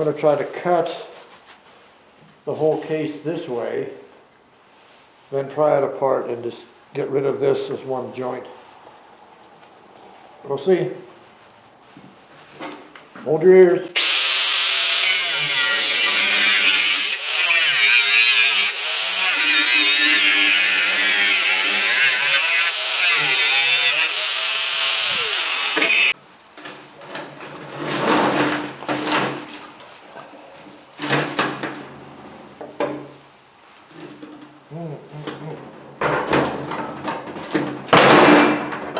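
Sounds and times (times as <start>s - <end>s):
angle grinder cutting metal: 13.9s - 26.2s.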